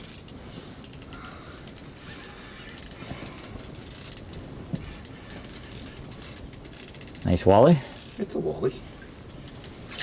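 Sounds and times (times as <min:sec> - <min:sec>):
fishing reel ticking: 0:00.0 - 0:01.9, 0:02.7 - 0:08.4.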